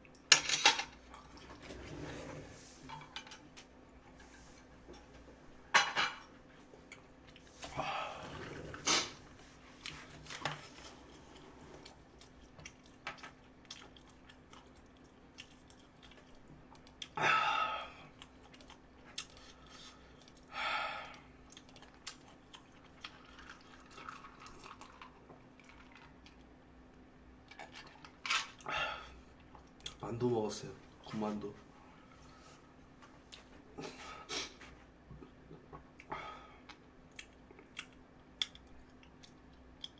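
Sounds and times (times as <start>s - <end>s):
soft chewing: 6.2s - 7.8s, 9.2s - 17.2s, 17.9s - 26.6s, 27.3s - 30.1s, 31.9s - 39.9s.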